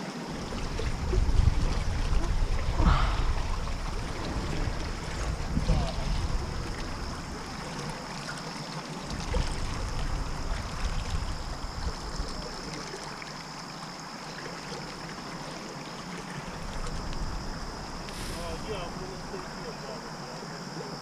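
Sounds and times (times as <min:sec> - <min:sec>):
creek water running: 0:00.0 - 0:21.0
low rumble: 0:00.3 - 0:08.1, 0:09.1 - 0:12.8, 0:16.4 - 0:20.2.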